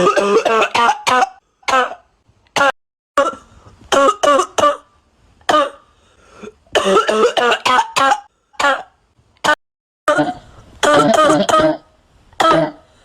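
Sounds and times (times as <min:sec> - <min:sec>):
person coughing harshly: 0:00.0 - 0:04.9, 0:05.5 - 0:05.8, 0:06.8 - 0:09.0, 0:10.1 - 0:12.9.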